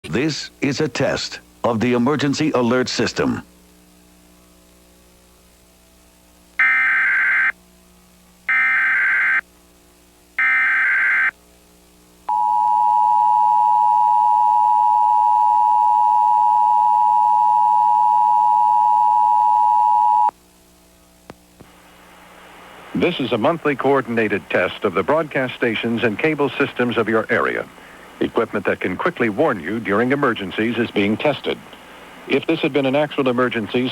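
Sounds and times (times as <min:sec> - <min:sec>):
buzzing digital data tones: 0:06.6 - 0:07.6, 0:08.5 - 0:09.4, 0:10.4 - 0:11.4.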